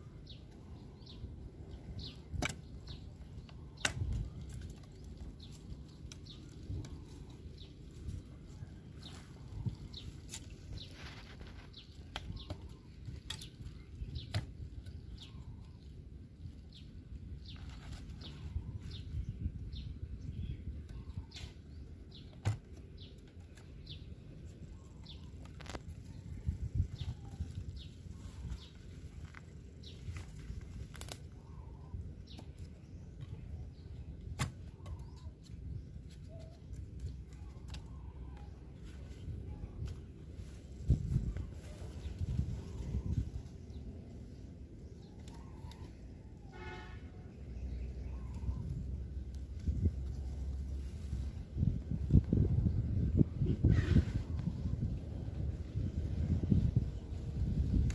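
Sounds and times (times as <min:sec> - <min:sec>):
bird chirping: 0:00.0 - 0:30.7, 0:44.8 - 0:51.2.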